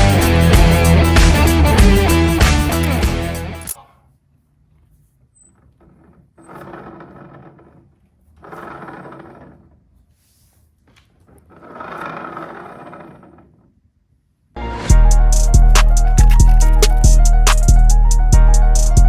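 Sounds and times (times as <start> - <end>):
scraping sliding sounds: 4.8 - 13.8, 15.3 - 17.7.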